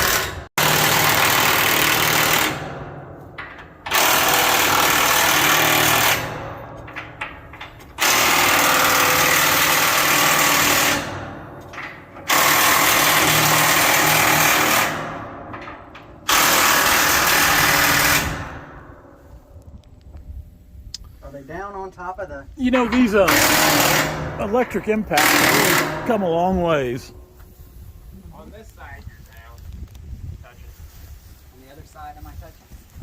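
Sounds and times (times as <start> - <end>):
impact wrench rattling: 0.0 - 18.4, 22.8 - 26.6.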